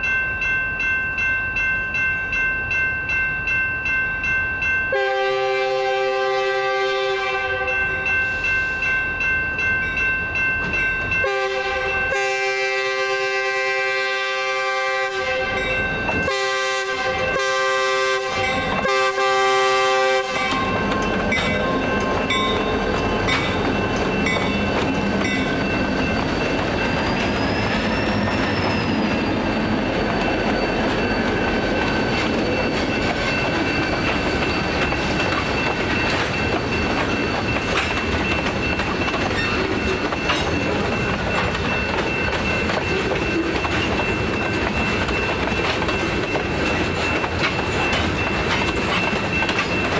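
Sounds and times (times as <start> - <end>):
train rolling past: 0.0 - 49.9
locomotive horn blasts: 4.9 - 8.1, 11.2 - 20.8
wheels clicking over rail joints: 29.9 - 49.9.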